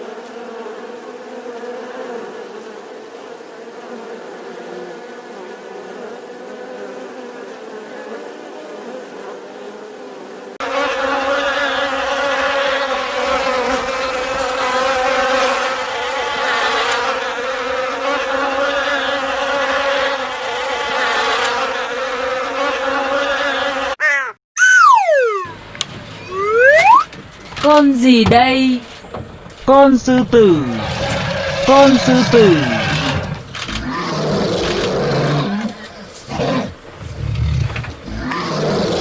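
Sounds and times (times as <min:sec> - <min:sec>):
bees buzzing: 0:00.0 - 0:20.6, 0:24.7 - 0:39.0.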